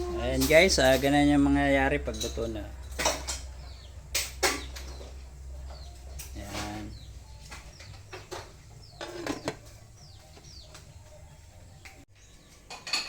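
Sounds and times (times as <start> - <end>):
small birds chirping: 0.0 - 13.0
light knocks and clinks: 2.0 - 10.6, 12.6 - 13.0.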